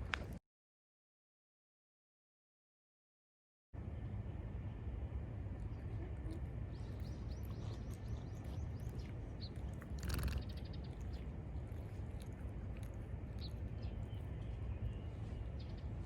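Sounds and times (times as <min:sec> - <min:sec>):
steady low rumble: 0:03.8 - 0:16.0.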